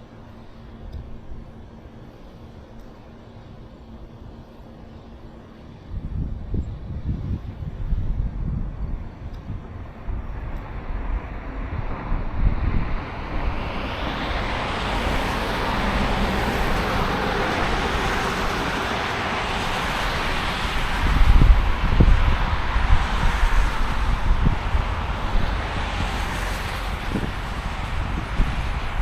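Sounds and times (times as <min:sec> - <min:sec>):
road traffic hiss: 0:00.0 - 0:29.0
wind buffeting microphone: 0:05.9 - 0:29.0.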